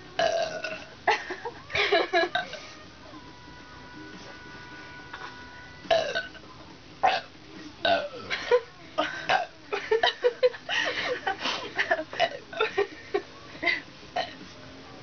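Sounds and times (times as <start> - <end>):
people burping: 0.2 - 1.0, 5.9 - 6.4, 7.0 - 10.2, 11.9 - 12.9, 14.2 - 14.4.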